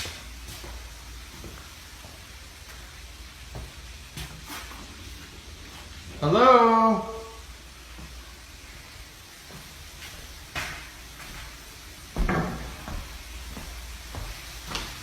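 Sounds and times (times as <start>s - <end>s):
door thud: 12.2s - 12.8s.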